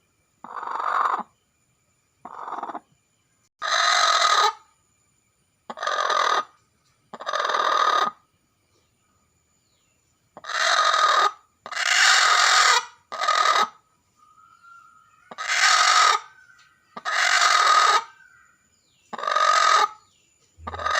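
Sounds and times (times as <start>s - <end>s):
hen squawking: 20.6s - 20.9s.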